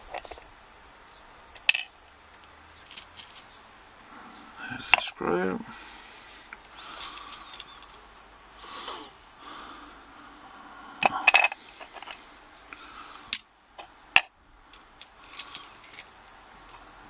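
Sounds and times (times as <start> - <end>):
padlock and tools clicking: 2.8 - 3.5, 6.6 - 8.0.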